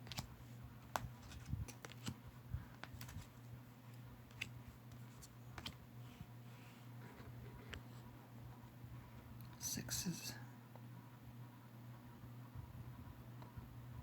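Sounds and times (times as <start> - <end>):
cards clicking and tapping: 0.0 - 5.8.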